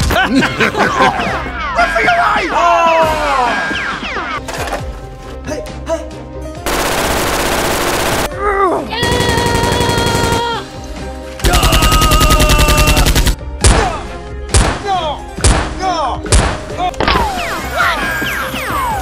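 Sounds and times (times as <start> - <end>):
background music: 0.0 - 19.0
automatic gunfire bursts: 6.7 - 8.3, 9.0 - 10.4.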